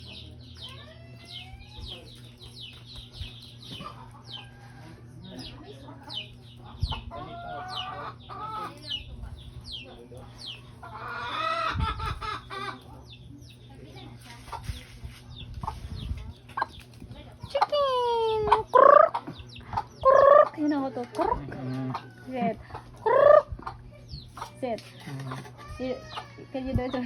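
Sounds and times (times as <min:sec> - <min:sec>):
chickens clucking: 0:00.0 - 0:27.0
chicks peeping: 0:00.0 - 0:27.0
steady low hum: 0:00.0 - 0:27.0.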